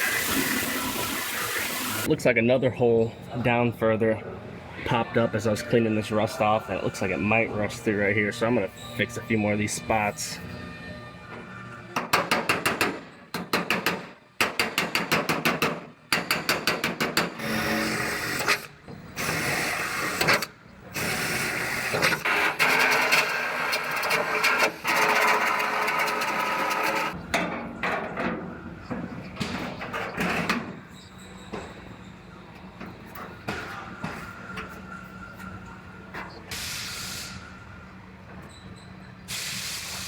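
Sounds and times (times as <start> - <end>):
power tool rough grinding noise: 17.4 - 27.2.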